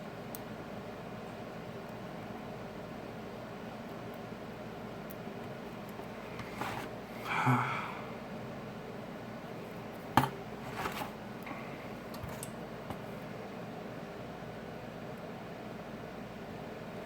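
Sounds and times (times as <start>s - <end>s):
faint scrape: 6.4s - 6.9s.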